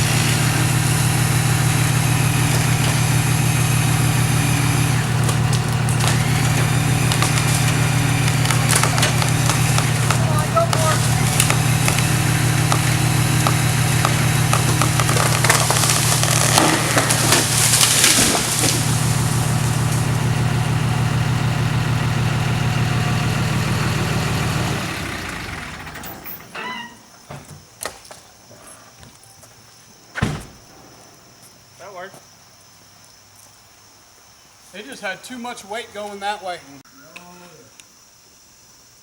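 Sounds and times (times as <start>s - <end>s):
loud rushing crackle: 0.0s - 20.8s
engine running: 0.0s - 26.6s.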